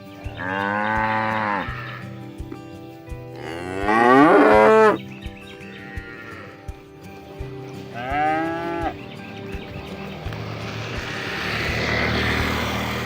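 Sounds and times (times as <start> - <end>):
cow mooing: 0.4 - 2.1, 3.4 - 5.0, 5.8 - 6.7, 8.0 - 9.0.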